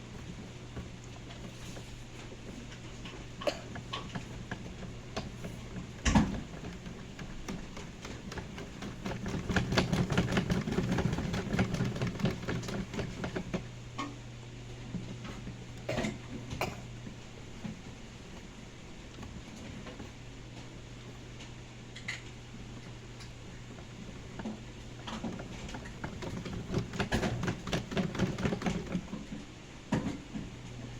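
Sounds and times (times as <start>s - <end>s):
rapid clicking and rattling: 0.0s - 14.1s, 22.0s - 29.4s
washing machine motor hum: 0.0s - 30.9s.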